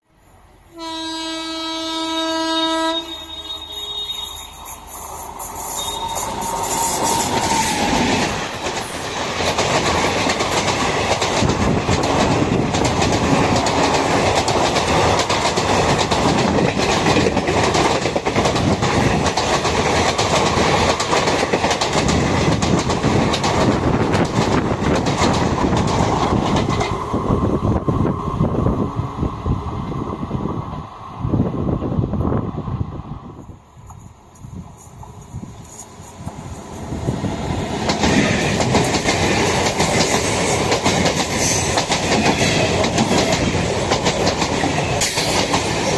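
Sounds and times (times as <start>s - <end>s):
train wheels clattering over rail joints: 6.2s - 27.1s, 37.6s - 45.9s.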